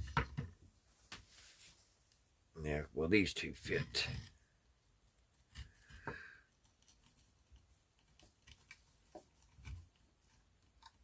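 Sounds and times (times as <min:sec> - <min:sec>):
faint clicks and rustles of wires: 0:00.0 - 0:02.3, 0:03.6 - 0:11.0.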